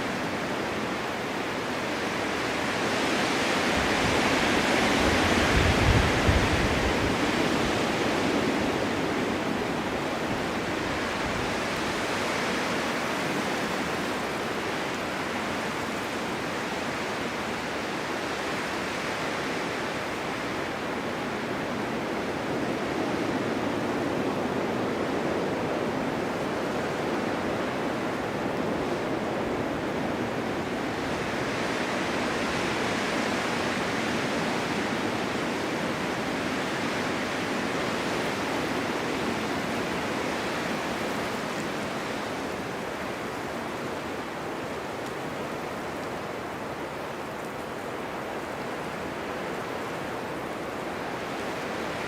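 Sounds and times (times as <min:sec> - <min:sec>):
wind buffeting microphone: 0:02.5 - 0:12.5.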